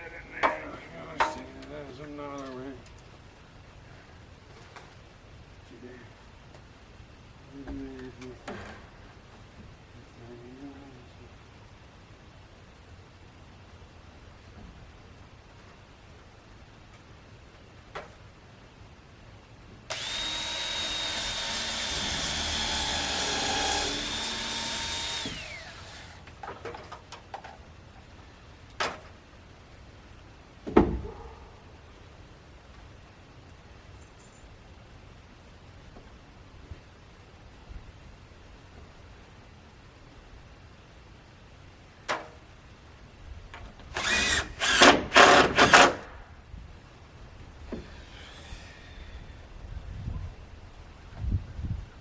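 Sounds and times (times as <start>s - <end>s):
power drill running: 19.9s - 26.2s, 44.0s - 45.9s.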